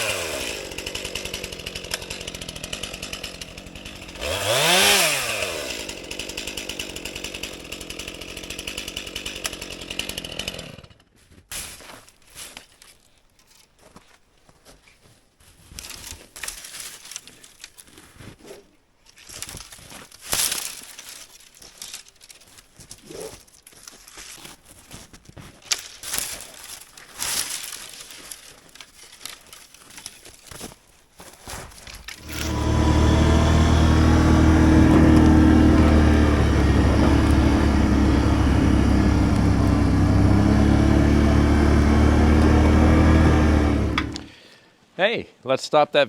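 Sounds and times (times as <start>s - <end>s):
branches crackling and rustling: 0.0s - 10.9s, 11.5s - 44.4s
branches snapping: 0.0s - 10.9s, 15.7s - 18.3s, 19.1s - 44.4s
chainsaw: 0.0s - 11.1s, 20.4s - 22.4s, 25.7s - 30.6s, 32.0s - 44.5s.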